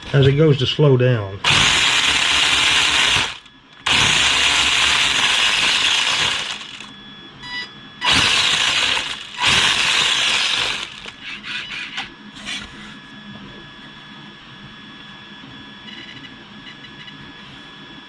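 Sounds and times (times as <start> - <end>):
toy car electric motor whirring: 1.4 - 6.9, 8.0 - 12.7.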